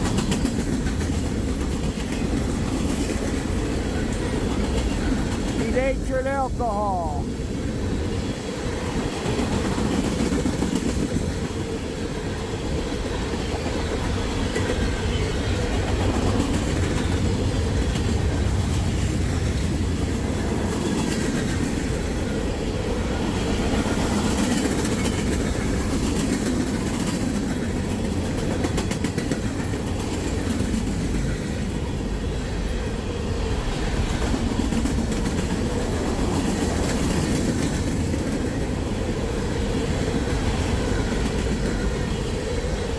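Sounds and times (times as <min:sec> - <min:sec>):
freight train rumbling past: 0:00.0 - 0:42.9.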